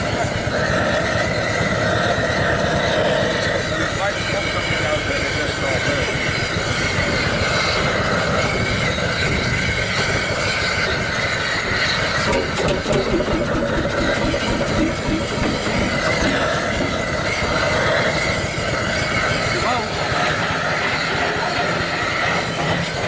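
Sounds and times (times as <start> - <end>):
tractor engine running: 0.0 - 23.0.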